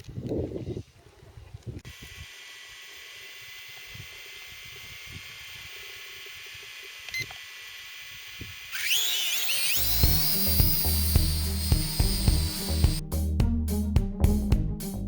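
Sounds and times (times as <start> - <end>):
music with electronic sweep: 9.9 - 15.0.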